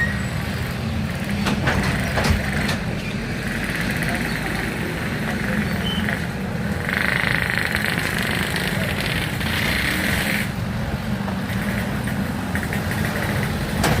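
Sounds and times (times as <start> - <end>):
vehicle engines rumbling: 0.0 - 14.0.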